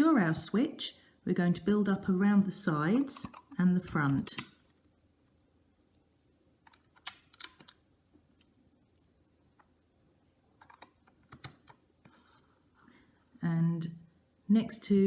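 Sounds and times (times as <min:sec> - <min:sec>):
plastic bricks clicking together: 0:06.7 - 0:07.8.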